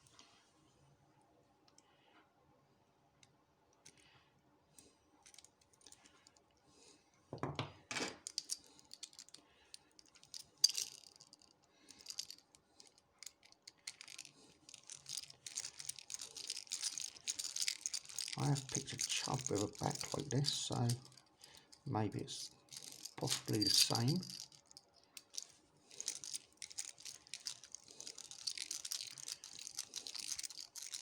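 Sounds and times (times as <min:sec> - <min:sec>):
metal clicks and rattles: 0:08.1 - 0:09.4, 0:10.0 - 0:21.2, 0:22.7 - 0:31.0.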